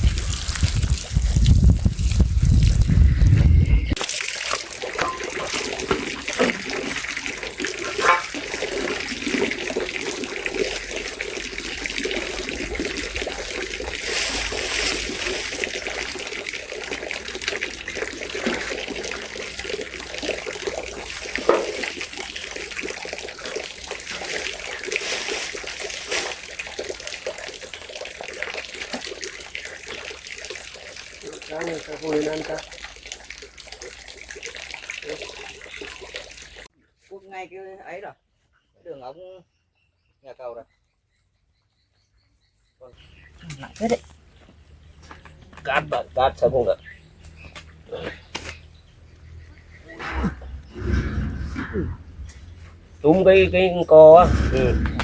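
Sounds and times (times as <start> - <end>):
water running and trickling: 0.0 - 36.7
loud low rumble: 50.4 - 52.6, 54.2 - 55.0.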